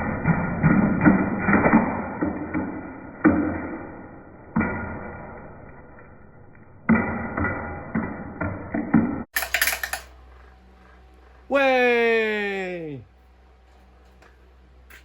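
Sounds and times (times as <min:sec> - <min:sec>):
fan blades clattering: 0:09.3 - 0:12.3, 0:13.2 - 0:15.0.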